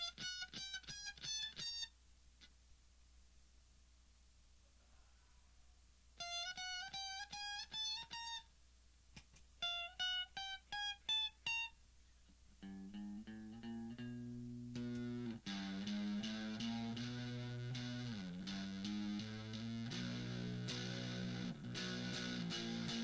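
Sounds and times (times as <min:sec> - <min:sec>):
fuzz electric guitar: 0:12.6 - 0:23.0.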